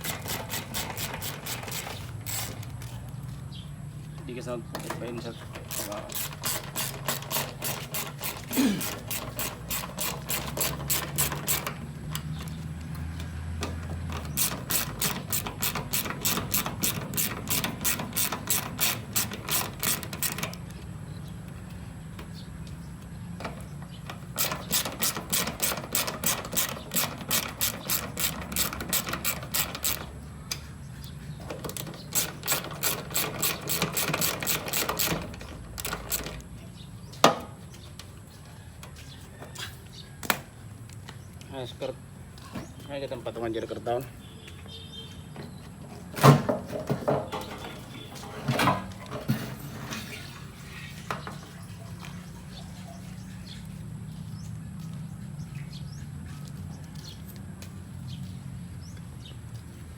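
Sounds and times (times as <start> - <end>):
ratchet wrench clicking: 0.0 - 2.8, 5.4 - 12.4, 14.1 - 20.8, 24.1 - 30.7, 31.7 - 36.5.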